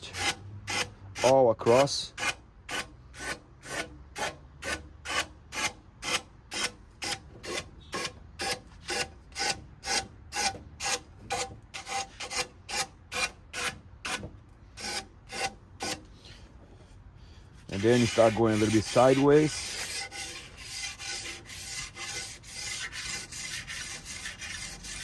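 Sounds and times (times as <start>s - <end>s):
sandpaper rubbing on wood: 17.6s - 25.0s.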